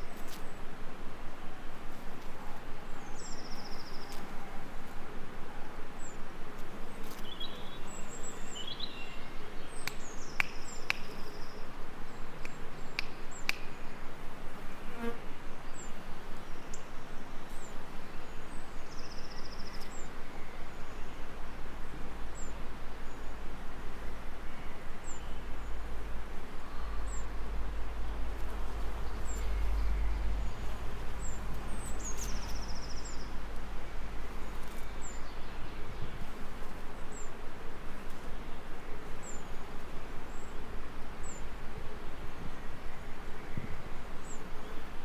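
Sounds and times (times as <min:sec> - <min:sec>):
bees buzzing: 0:25.4 - 0:35.2
small birds chirping and trilling: 0:26.5 - 0:36.4.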